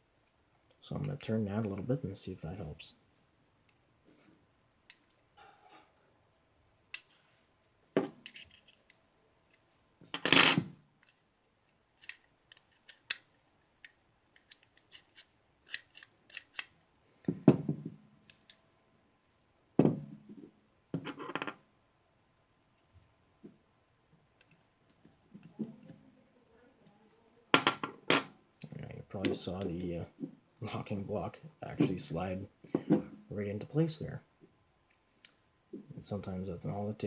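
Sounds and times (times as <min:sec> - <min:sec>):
metal pistol parts clicking: 0:06.8 - 0:07.2, 0:08.2 - 0:09.6, 0:11.0 - 0:16.9, 0:18.2 - 0:18.6.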